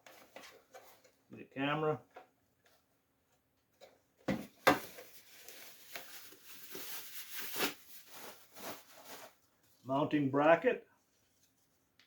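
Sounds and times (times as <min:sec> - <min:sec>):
packaging rustling: 0:04.5 - 0:09.5.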